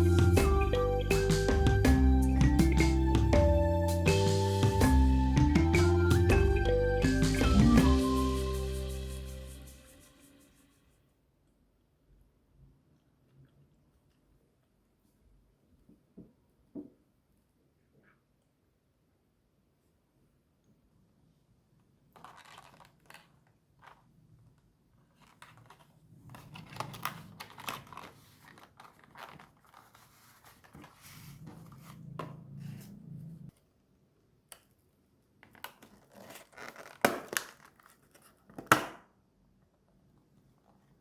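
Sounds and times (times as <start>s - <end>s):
packaging tearing and crinkling: 22.2s - 24.0s, 25.2s - 30.7s, 35.5s - 38.4s.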